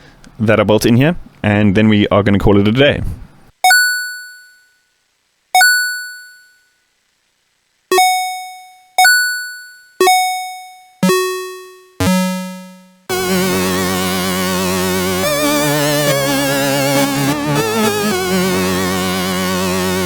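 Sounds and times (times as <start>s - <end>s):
bell-like synth notes: 7.9s - 13.1s
sustained synth chord with vibrato: 11.0s - 20.0s.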